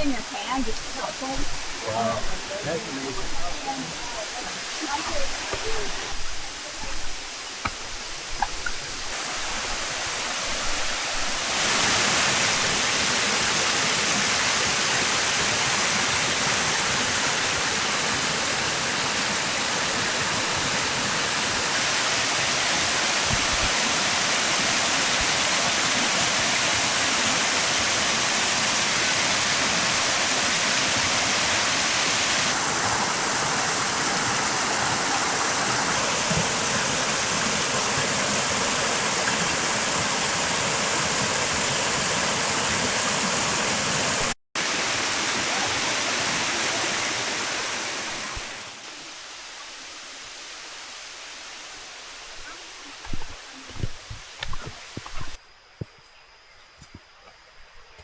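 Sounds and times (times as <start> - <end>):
waterfall rushing: 0.0 - 55.4.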